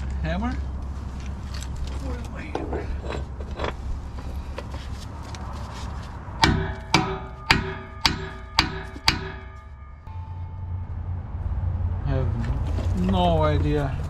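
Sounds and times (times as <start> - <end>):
hammer striking metal: 6.4 - 11.2.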